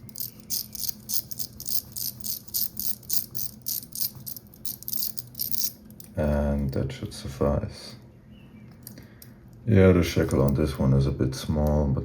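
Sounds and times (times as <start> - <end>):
padlock number wheels clicking: 0.0 - 6.1.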